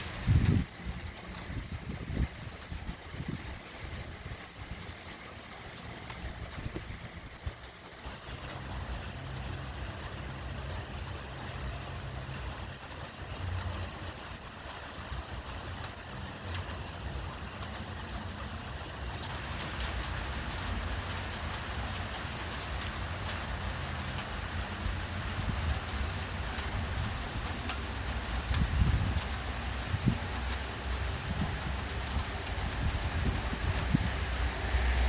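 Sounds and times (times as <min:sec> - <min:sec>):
rain falling: 0:00.0 - 0:35.0
low rumble: 0:30.7 - 0:35.0.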